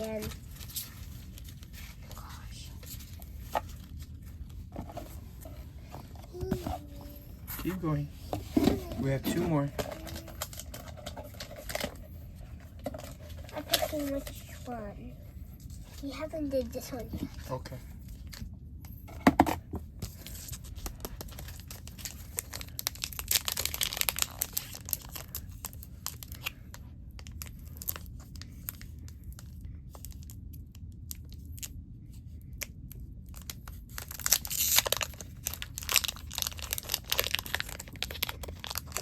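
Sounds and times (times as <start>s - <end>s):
foil wrapper tearing and crinkling: 9.0s - 11.8s, 20.2s - 28.9s, 33.3s - 39.0s.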